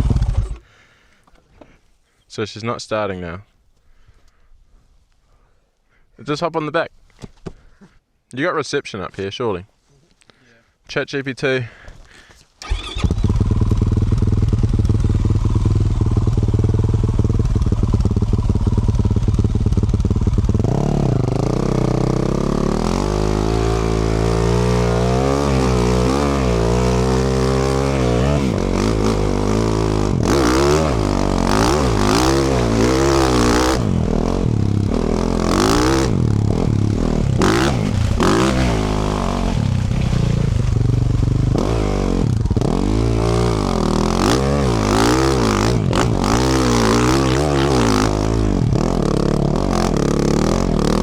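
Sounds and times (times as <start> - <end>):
dirt bike engine revving: 0.0 - 0.6, 12.6 - 51.0
rough noise: 20.7 - 50.8.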